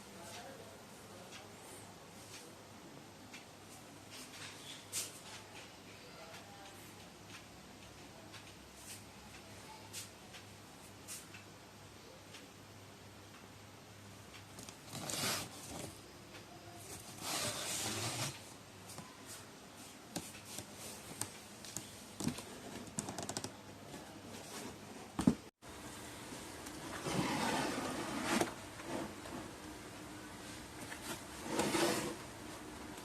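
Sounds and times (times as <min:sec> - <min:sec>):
rustling and scraping: 0:14.6 - 0:16.0, 0:16.8 - 0:23.2, 0:26.3 - 0:29.8, 0:30.4 - 0:33.0.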